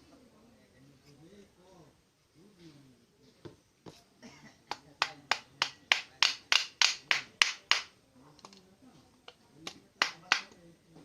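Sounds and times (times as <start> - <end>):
rapid sharp taps: 9.7 - 10.6.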